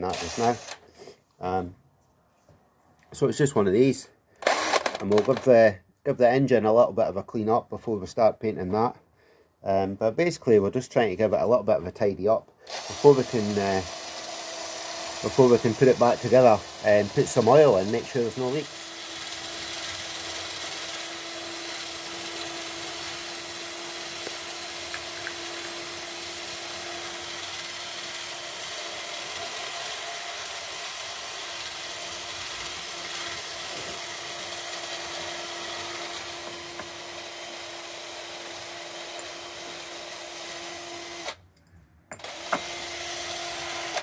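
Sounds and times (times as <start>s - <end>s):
drill motor whine: 0.1s - 0.8s, 4.4s - 5.4s, 12.7s - 41.4s, 42.2s - 44.0s.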